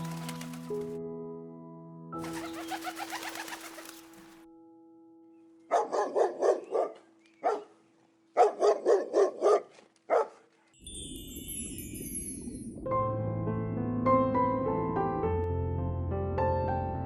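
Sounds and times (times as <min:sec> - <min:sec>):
dog barking: 0:05.7 - 0:07.8, 0:08.4 - 0:10.5
high falling chirps: 0:10.8 - 0:12.8.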